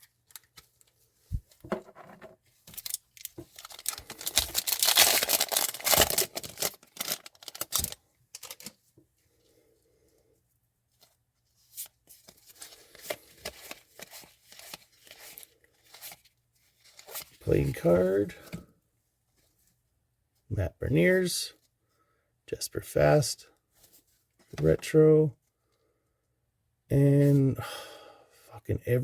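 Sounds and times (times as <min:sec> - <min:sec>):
cards clicking and rustling: 0:01.6 - 0:08.8
wrapper tearing and crinkling: 0:02.7 - 0:08.8.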